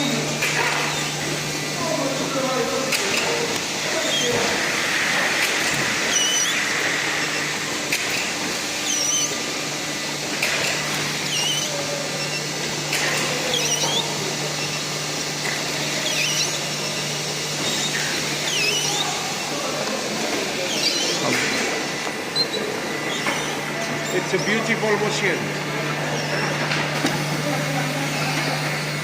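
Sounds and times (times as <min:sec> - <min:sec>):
packaging machine whirring: 0:00.0 - 0:29.0
short high squeaks: 0:00.6 - 0:01.2, 0:04.0 - 0:04.6, 0:06.1 - 0:07.4, 0:08.0 - 0:09.4, 0:10.4 - 0:19.7, 0:20.5 - 0:25.4, 0:26.0 - 0:26.7.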